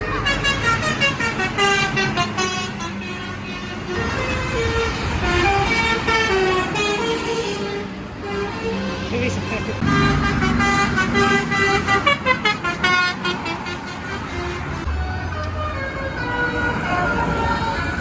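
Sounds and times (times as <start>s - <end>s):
bus horn playing a melody: 0.0s - 18.0s.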